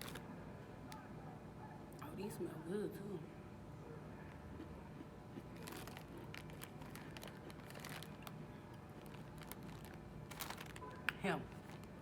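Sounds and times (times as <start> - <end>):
chewing crunchy cookie: 4.3 - 12.0.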